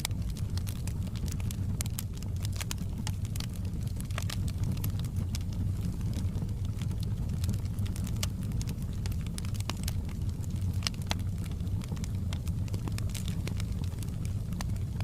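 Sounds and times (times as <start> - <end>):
fire crackles and pops: 0.0 - 15.0
fire flames rumbling: 0.0 - 15.0.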